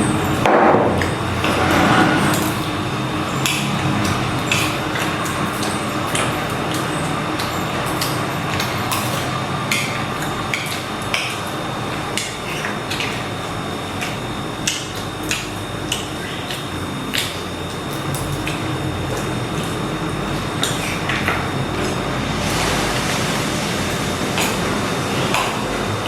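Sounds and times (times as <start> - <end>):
steady background noise: 0.0 - 26.0.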